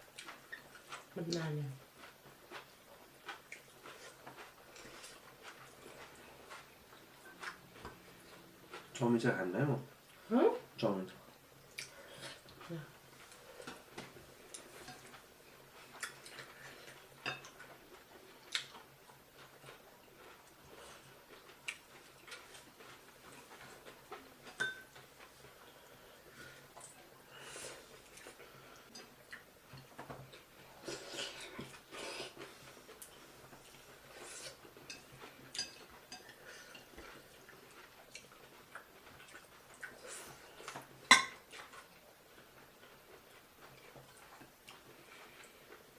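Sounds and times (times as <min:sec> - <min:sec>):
close-miked chewing noises: 0:00.0 - 0:45.9
utensil clinking on a plate: 0:24.5 - 0:25.0.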